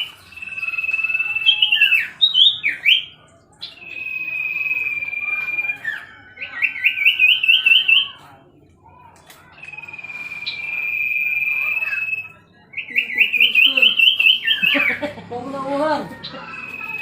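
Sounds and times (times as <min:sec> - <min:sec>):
bird long whistle: 0:03.8 - 0:08.2, 0:09.6 - 0:14.8
bird rising chirps: 0:09.4 - 0:15.0, 0:16.0 - 0:17.0.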